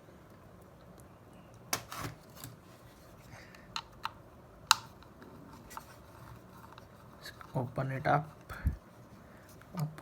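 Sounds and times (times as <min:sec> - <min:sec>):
laptop parts clicking: 0:03.7 - 0:05.9.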